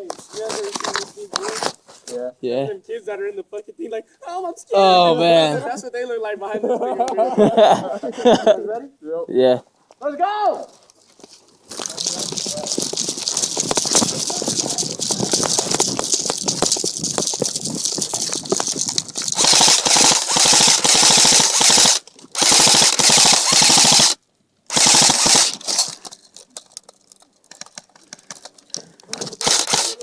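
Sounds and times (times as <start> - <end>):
airsoft guns firing: 18.4 - 26.0, 29.4 - 30.0.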